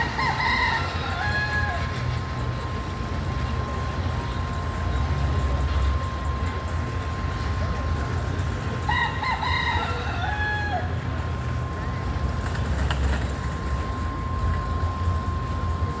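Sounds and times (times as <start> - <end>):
rooster crowing: 0.0 - 2.0, 8.9 - 11.0
faint steady tone: 0.0 - 16.0.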